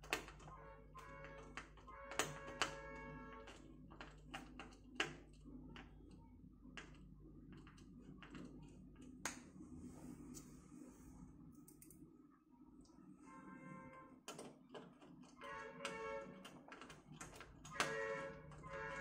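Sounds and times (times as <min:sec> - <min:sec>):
computer parts clicking and tapping: 0:00.0 - 0:09.4, 0:14.2 - 0:19.0.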